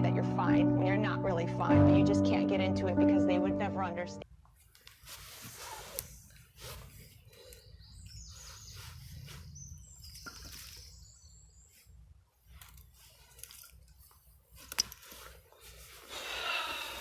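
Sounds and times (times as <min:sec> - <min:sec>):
small birds chirping: 0:05.7 - 0:12.6.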